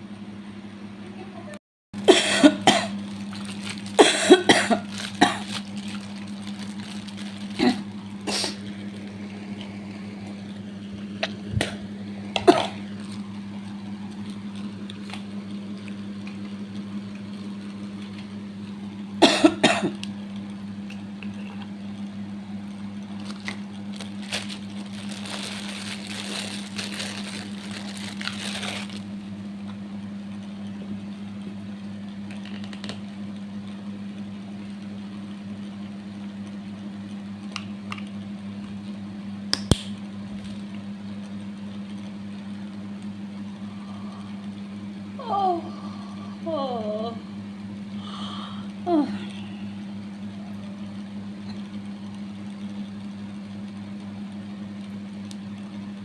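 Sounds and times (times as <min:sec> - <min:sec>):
steady low hum: 0:00.0 - 0:56.0
person coughing: 0:02.1 - 0:03.0, 0:04.0 - 0:05.5, 0:07.6 - 0:08.6, 0:12.4 - 0:12.8, 0:19.2 - 0:20.0.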